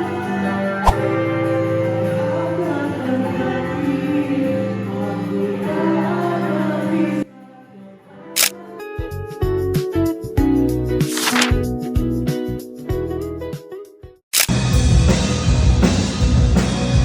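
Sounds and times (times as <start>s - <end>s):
music with sustained tones: 0.0s - 9.0s
person singing: 0.0s - 9.4s
sharp click: 11.1s - 11.6s.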